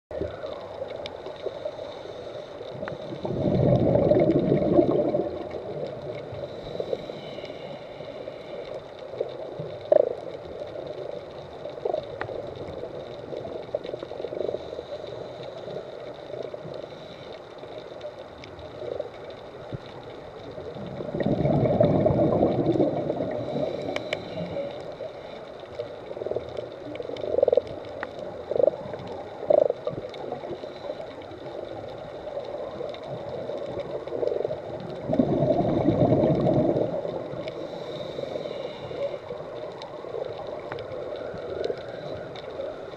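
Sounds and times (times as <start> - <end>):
underwater hiss: 0.2 - 42.9
rough rumbling fish bursts: 3.2 - 5.7, 20.9 - 24.1, 35.0 - 38.4.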